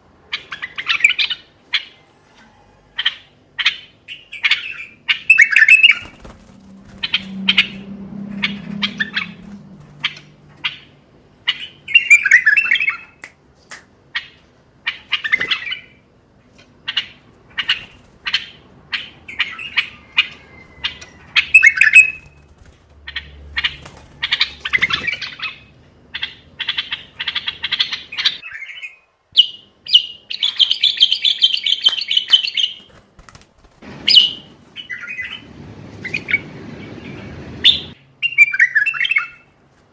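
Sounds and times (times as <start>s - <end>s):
bird rapid chattering: 3.0s - 10.9s
bird chirping and whistling: 4.1s - 10.8s, 11.5s - 13.2s, 19.0s - 22.4s, 23.6s - 32.8s, 34.1s - 35.4s, 37.6s - 39.5s.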